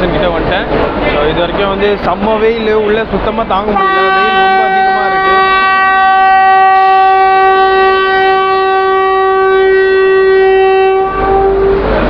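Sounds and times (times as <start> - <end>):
electric locomotive horn blast: 3.8 - 12.0.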